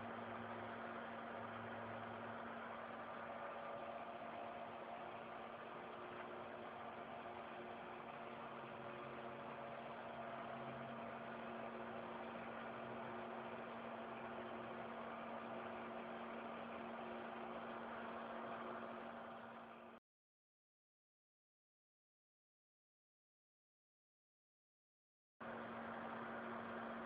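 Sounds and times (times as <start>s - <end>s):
low machine tone: 0.0s - 20.0s, 25.4s - 27.0s
milling machine hum and whine: 0.0s - 20.0s, 25.4s - 27.0s.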